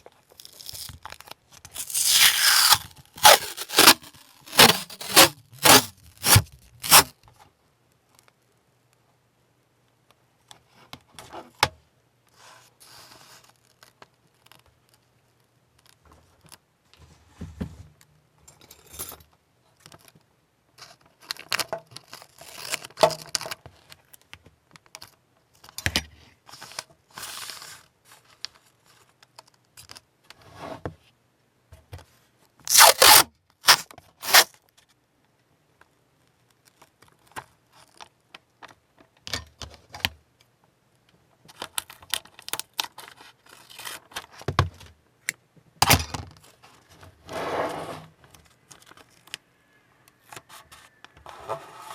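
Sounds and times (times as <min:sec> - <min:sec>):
rasping tearing bursts: 0:01.8 - 0:07.1, 0:32.7 - 0:34.5.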